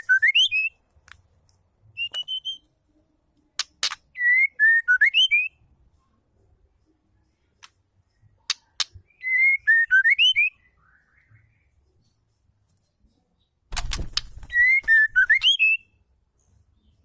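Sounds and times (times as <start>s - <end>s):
bird whistling phrase: 14.5s - 15.8s.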